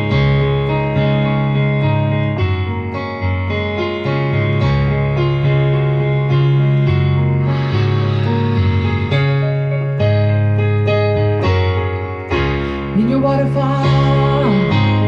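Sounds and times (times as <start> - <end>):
electric piano sustained chords: 0.0 - 15.0.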